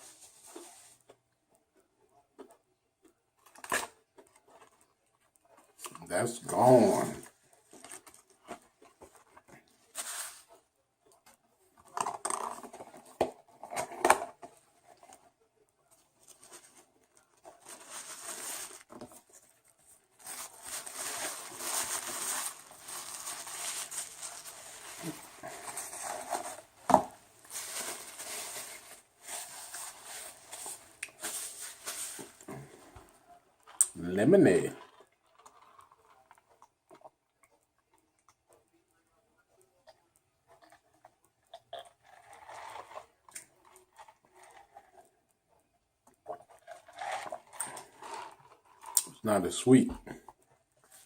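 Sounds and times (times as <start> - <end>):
paper wrappers rustling: 16.2 - 36.2.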